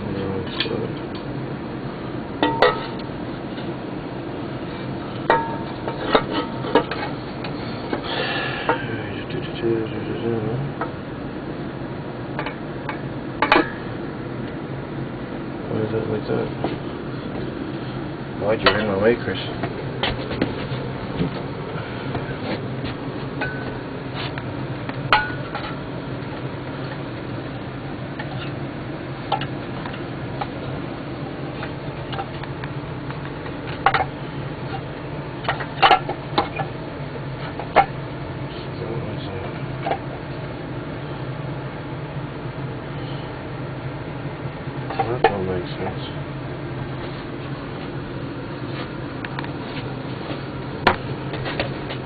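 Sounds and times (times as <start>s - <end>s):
low hum: 0.0s - 52.0s.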